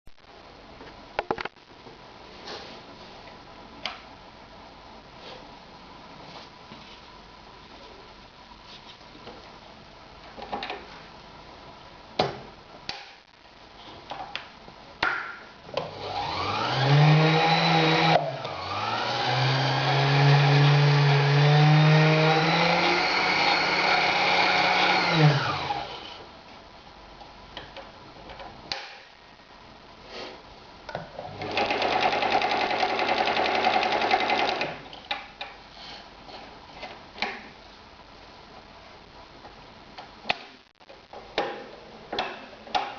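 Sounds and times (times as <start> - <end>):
sewing machine stitching leather: 31.3 - 34.8.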